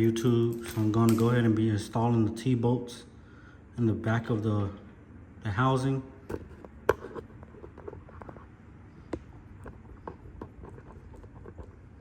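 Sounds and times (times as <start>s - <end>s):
metal bolts clicking: 0.0s - 1.6s.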